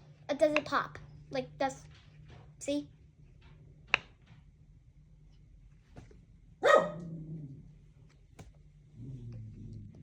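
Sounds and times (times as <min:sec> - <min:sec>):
dog bark: 0:06.6 - 0:07.1.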